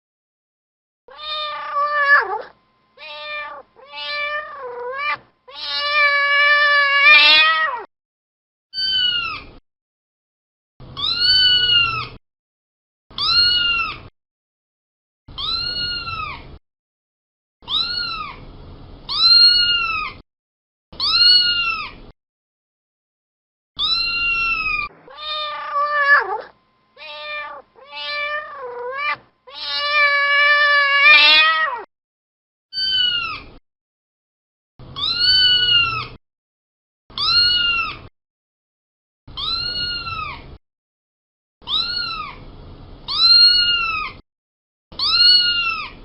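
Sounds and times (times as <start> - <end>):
cat meowing: 1.1 - 7.9, 8.8 - 9.5, 11.0 - 12.2, 13.2 - 14.1, 15.4 - 16.4, 17.7 - 18.4, 19.1 - 20.2, 21.0 - 22.0, 23.8 - 31.9, 32.8 - 33.6, 35.0 - 36.2, 37.2 - 38.1, 39.4 - 40.5, 41.7 - 42.4, 43.1 - 44.2, 45.0 - 46.0.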